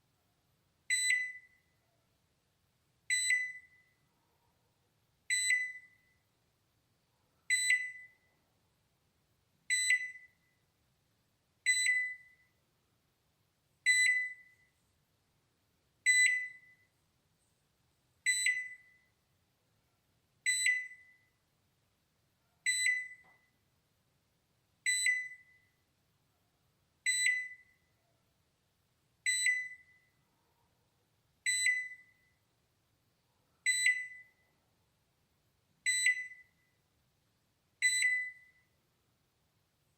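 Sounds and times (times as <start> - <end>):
microwave alarm beep: 0.9 - 1.8, 3.1 - 4.0, 5.3 - 6.3, 7.5 - 8.3, 9.7 - 10.6, 11.6 - 12.6, 13.8 - 14.8, 16.0 - 16.9, 18.2 - 19.2, 20.4 - 21.4, 22.6 - 23.5, 24.8 - 25.8, 27.0 - 27.9, 29.2 - 30.2, 31.4 - 32.4, 33.6 - 34.4, 35.8 - 36.8, 37.8 - 38.8.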